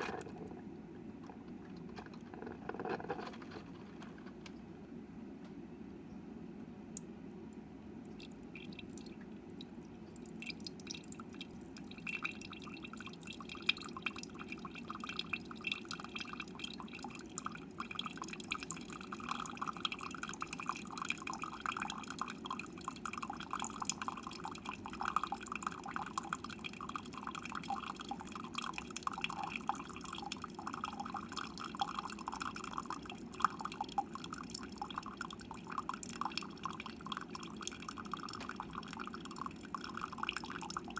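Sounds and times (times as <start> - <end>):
coffee maker low hum: 0.0 - 5.9
coffee dripping into a mug: 8.1 - 40.9.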